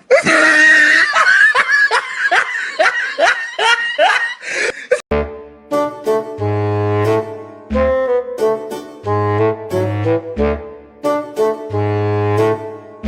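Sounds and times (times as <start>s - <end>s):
person laughing hard: 0.0s - 5.0s
instrumental music: 5.1s - 13.0s.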